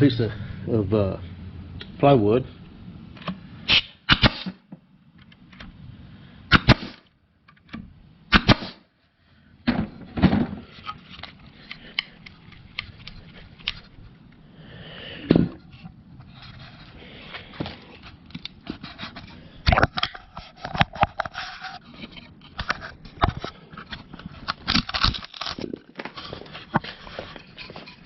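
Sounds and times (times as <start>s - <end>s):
pneumatic stapler firing into wood: 3.7s - 4.7s, 6.5s - 7.1s, 8.3s - 8.8s.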